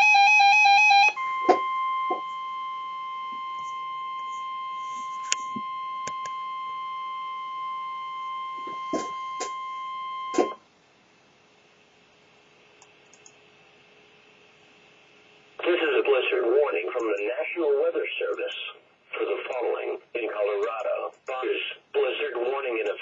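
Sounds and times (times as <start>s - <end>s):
steady high alarm tone: 0.0s - 10.6s
static clicks: 5.0s - 6.4s, 12.8s - 13.4s, 16.8s - 17.3s, 20.5s - 21.5s, 22.6s - 23.0s.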